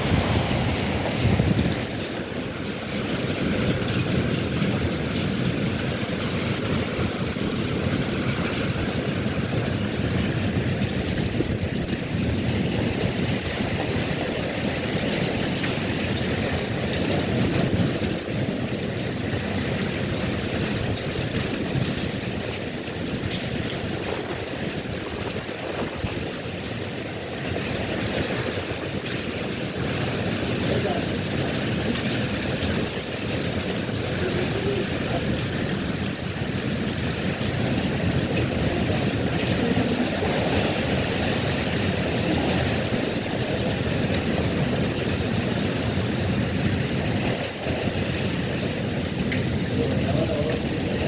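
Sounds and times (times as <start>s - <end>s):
wind rushing: 0.0s - 2.4s
heavy rain: 0.0s - 51.0s
wind rumbling on microphone: 0.0s - 51.0s.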